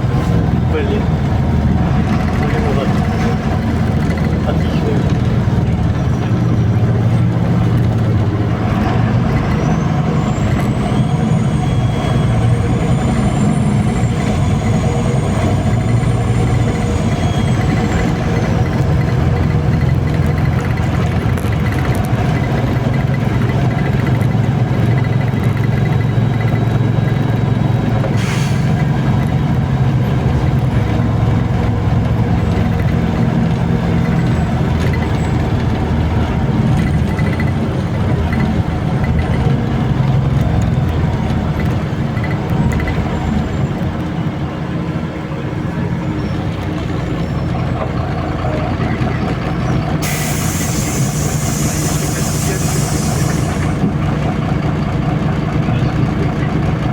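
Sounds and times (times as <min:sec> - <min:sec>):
bus engine drone: 0:00.0 - 0:56.9
air hiss: 0:50.0 - 0:53.8.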